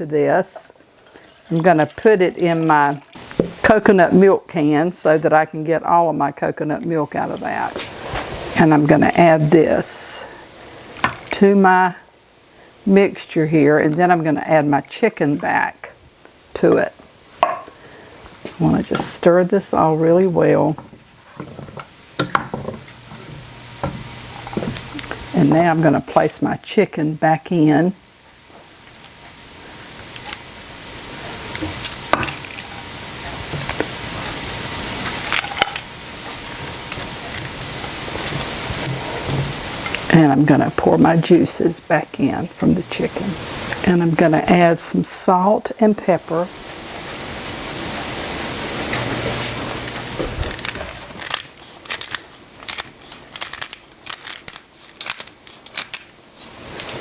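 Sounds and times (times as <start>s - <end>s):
sauce sizzling in a pan: 21.9s - 25.4s, 28.4s - 40.2s, 42.9s - 43.8s, 46.5s - 51.2s
pepper grinder crunching clicks: 50.4s - 56.1s.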